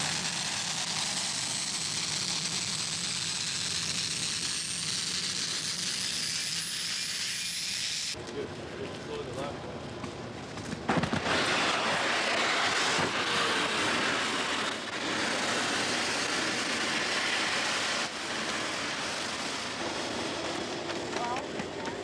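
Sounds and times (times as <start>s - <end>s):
jet engine rushing: 11.1s - 21.1s.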